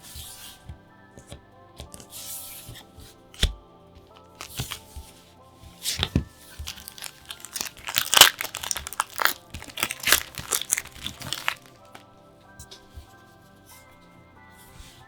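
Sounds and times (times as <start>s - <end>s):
plastic packaging crinkling: 4.0s - 5.0s, 5.8s - 13.1s.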